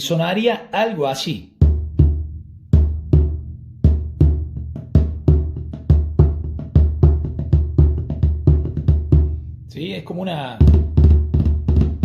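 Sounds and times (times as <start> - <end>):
snare drum galloping pattern: 4.0 - 12.0.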